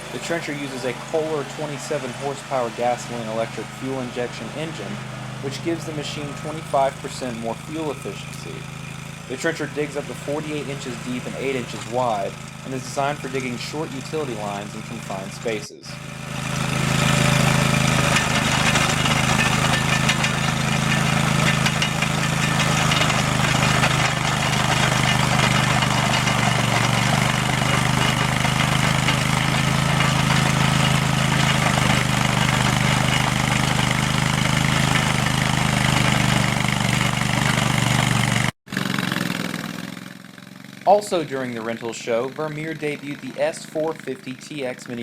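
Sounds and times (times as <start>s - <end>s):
trencher engine running: 0.0s - 45.0s.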